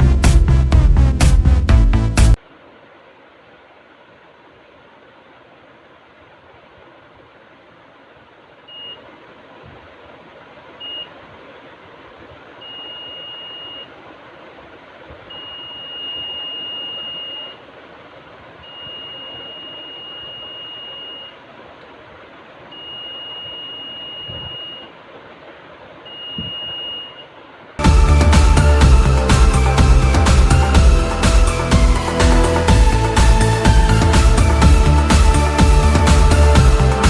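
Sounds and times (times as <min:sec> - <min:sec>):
alarm buzzer beeping: 0:12.6 - 0:13.9, 0:15.3 - 0:17.6, 0:18.7 - 0:21.4, 0:22.8 - 0:24.9, 0:26.1 - 0:27.3.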